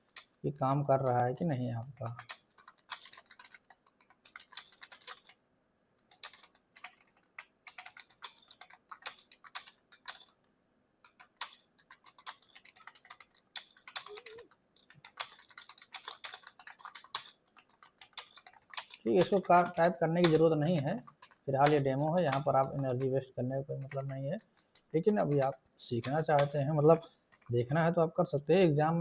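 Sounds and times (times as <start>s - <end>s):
computer keyboard typing: 0.0s - 5.4s, 6.0s - 10.4s, 11.0s - 28.0s.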